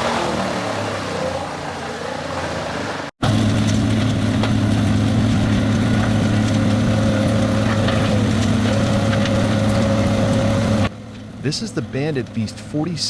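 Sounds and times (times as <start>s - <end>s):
wood chipper diesel engine running: 2.8s - 13.0s.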